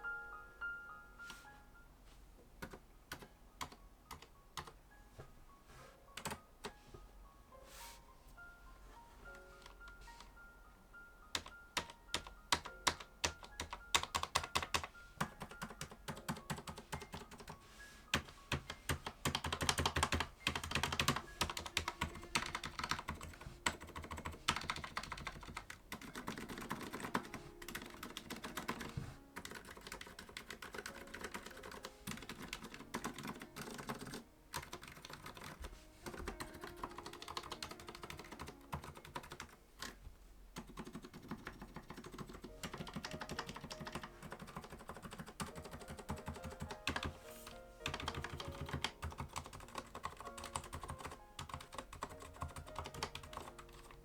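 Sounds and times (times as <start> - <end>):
mechanical keyboard keystrokes: 11.4 - 40.0, 40.6 - 47.2, 47.8 - 54.0.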